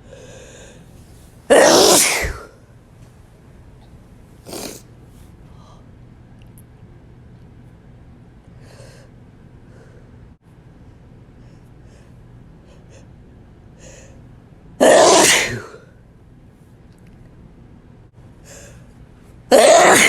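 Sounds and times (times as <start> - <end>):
faint short breaths: 0.0 - 1.3
man sneezing: 1.5 - 2.5, 14.8 - 15.8, 19.5 - 20.0.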